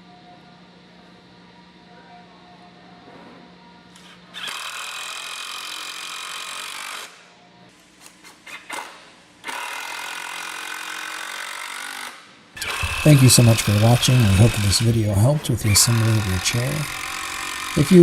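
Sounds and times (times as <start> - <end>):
power drill driving screws: 4.0 - 7.1, 8.5 - 18.0.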